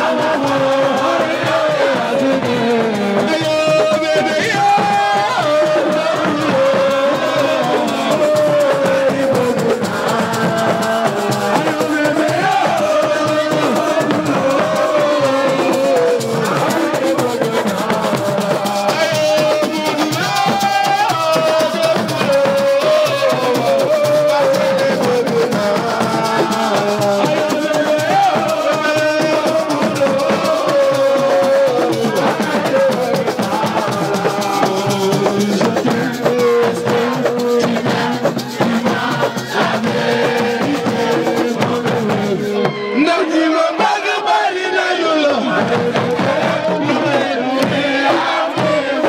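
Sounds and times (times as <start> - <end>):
music with melody: 0.0 - 43.1
fast percussion: 0.0 - 49.0
shaker rattle: 5.8 - 42.4.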